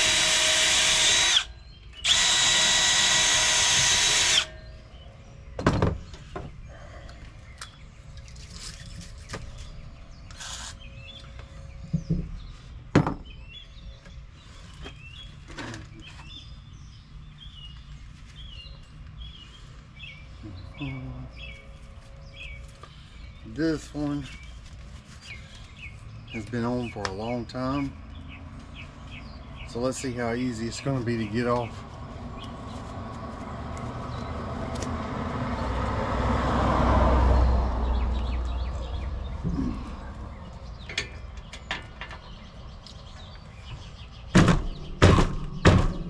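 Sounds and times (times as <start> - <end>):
cordless drill whining: 0.0 - 4.6, 10.4 - 10.7
small birds chirping: 0.2 - 35.0, 37.4 - 46.0.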